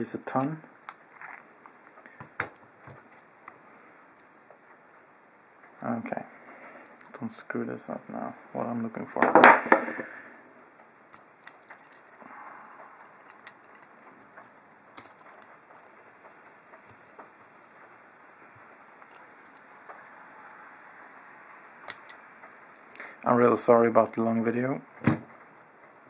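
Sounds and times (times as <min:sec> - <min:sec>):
low steady hiss: 0:00.0 - 0:26.0
metallic clicks of lock-picking: 0:11.1 - 0:12.1, 0:13.2 - 0:13.9.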